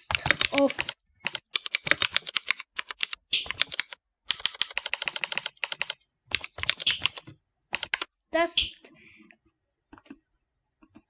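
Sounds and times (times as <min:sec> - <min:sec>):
mechanical keyboard key clicks: 0:00.0 - 0:07.2, 0:07.8 - 0:08.1.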